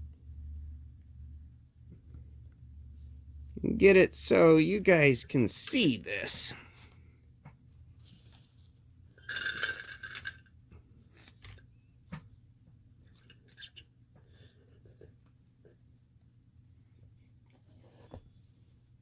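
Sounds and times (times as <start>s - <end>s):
rattle of small hard parts: 9.2s - 10.5s, 13.2s - 13.8s.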